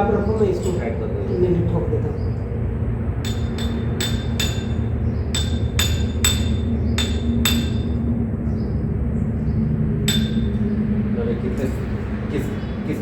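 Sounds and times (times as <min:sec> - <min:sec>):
hammer striking metal: 0:03.2 - 0:08.1, 0:10.0 - 0:10.6.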